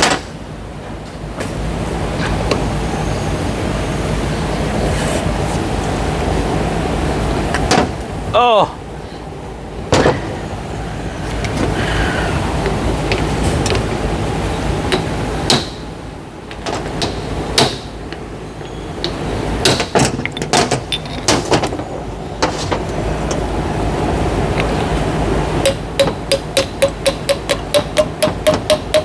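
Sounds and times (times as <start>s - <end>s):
steady low hum: 0.0s - 29.0s
metal knocks and clanks: 18.6s - 23.4s, 25.6s - 29.0s
fast ringing taps: 25.6s - 29.0s.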